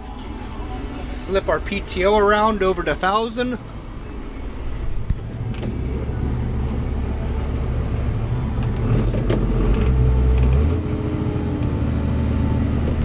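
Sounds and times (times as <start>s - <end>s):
tractor engine drone: 0.0s - 13.0s.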